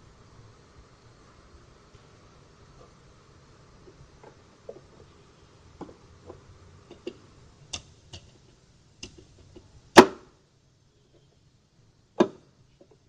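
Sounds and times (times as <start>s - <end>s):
tools clicking and tapping: 5.8s - 10.1s.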